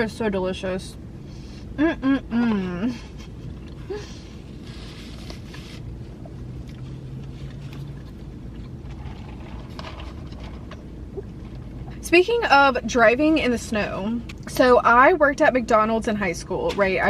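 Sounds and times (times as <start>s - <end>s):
person chewing food: 3.0s - 11.9s.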